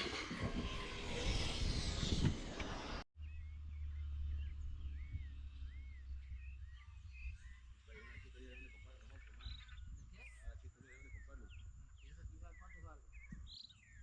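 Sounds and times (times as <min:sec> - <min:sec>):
wind buffeting microphone: 0:00.0 - 0:03.0, 0:04.0 - 0:14.0
birds calling in whistles: 0:03.2 - 0:14.0.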